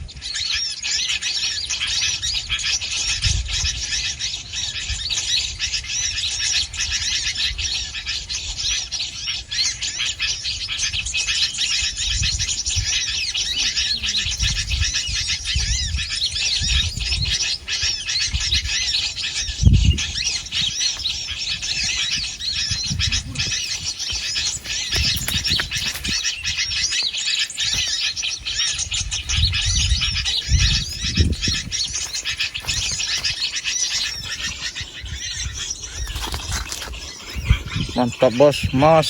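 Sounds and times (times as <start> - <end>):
small birds chirping: 0.0 - 39.0.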